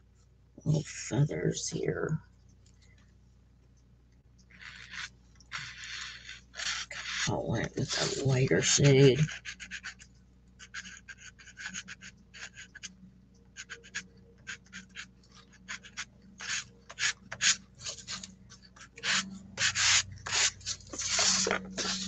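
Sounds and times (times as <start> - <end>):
pastel scratching on paper: 4.5 - 10.0, 10.6 - 12.9, 13.6 - 22.0.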